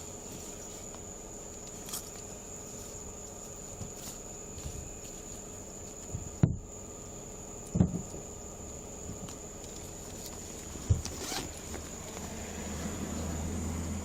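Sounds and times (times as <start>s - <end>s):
dull knocks: 6.1s - 6.6s, 7.7s - 8.2s.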